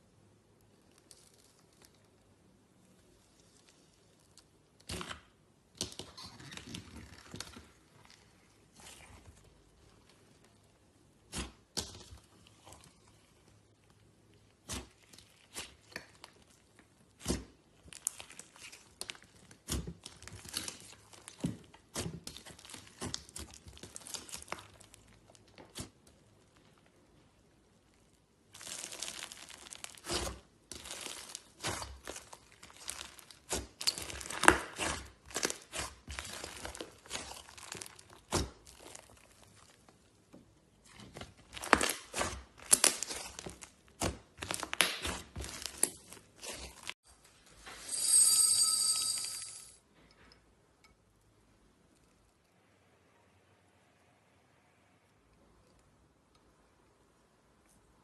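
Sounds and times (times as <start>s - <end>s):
slime squished by hand: 3.0s - 26.8s, 27.8s - 46.9s.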